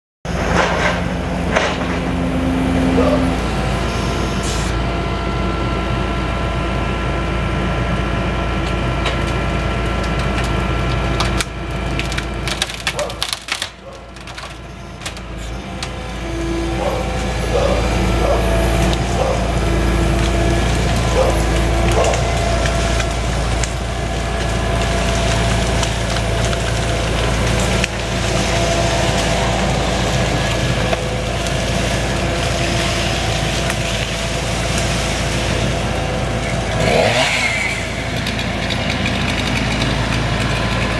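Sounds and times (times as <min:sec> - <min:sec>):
skid steer engine running: 0:00.2 - 0:40.9
wood splintering and cracking: 0:00.3 - 0:02.3, 0:08.6 - 0:40.9
hydraulic whine: 0:00.3 - 0:09.2, 0:14.4 - 0:40.9.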